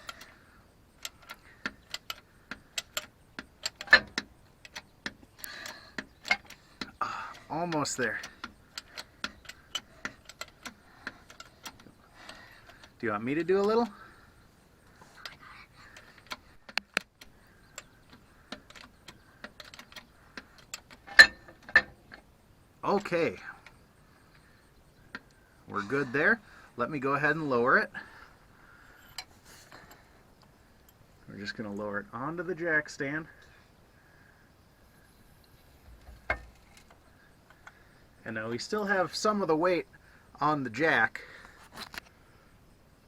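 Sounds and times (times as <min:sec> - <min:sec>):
metal clicks from hydraulic jack: 0:01.0 - 0:14.0, 0:15.2 - 0:22.2.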